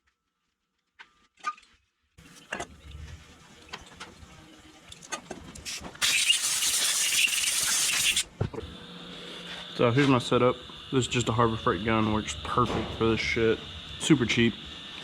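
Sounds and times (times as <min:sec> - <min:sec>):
compressed air hissing: 0:05.7 - 0:08.3.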